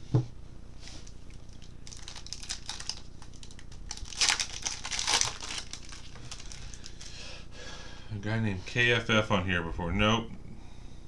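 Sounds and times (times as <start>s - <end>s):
wrapper crinkling and tearing: 1.0s - 7.2s.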